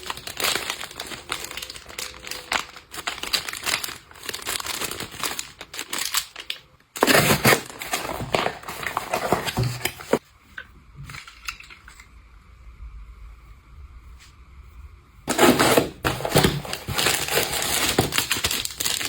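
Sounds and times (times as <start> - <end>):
packaging crinkling and rustling: 0.0 - 10.2, 15.3 - 19.0.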